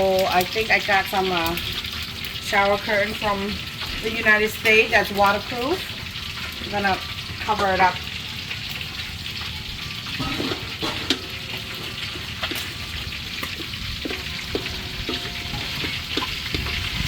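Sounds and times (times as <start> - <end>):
food sizzling in hot oil: 0.0 - 17.0
metal utensil clinking on pan: 10.1 - 17.0.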